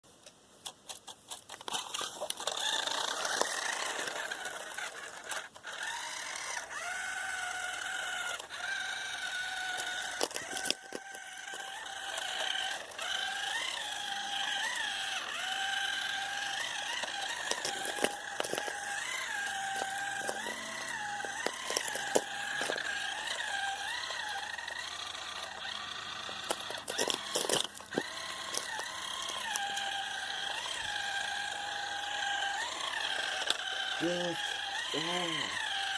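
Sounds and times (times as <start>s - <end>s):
rc car motor whining: 1.5s - 35.9s
sharp clicks and knocks: 26.3s - 29.9s.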